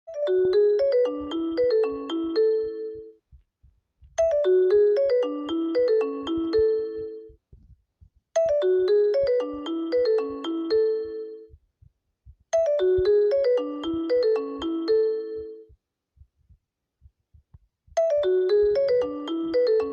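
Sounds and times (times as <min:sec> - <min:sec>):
phone ringtone melody: 0:00.1 - 0:03.2, 0:04.2 - 0:07.4, 0:08.4 - 0:11.5, 0:12.6 - 0:15.7, 0:18.0 - 0:19.9.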